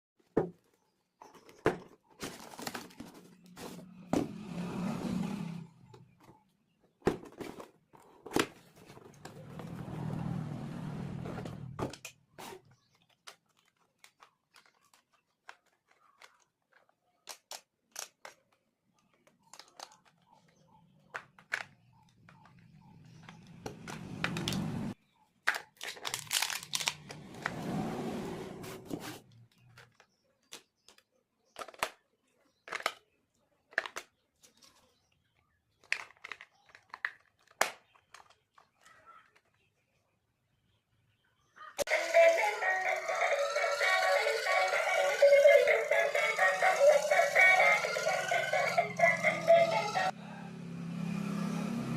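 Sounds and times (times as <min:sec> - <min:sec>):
plastic and cardboard tearing: 0:25.5 - 0:27.3
packaging rustling: 0:25.8 - 0:27.1.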